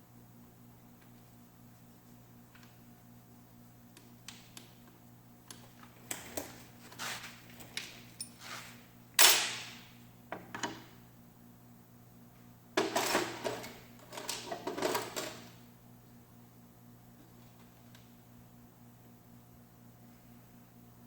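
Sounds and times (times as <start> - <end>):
steady low hum: 0.0 - 12.8.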